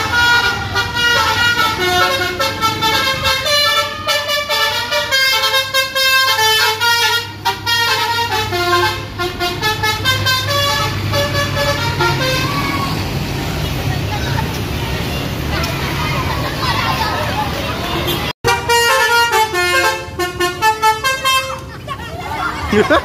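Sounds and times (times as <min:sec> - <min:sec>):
musical bus horn: 0:00.0 - 0:13.0, 0:18.0 - 0:21.8
bus engine hum: 0:00.0 - 0:23.0.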